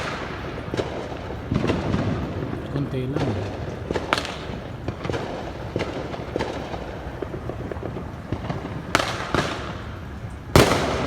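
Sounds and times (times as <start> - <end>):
firecracker bangs: 0.0 - 11.0.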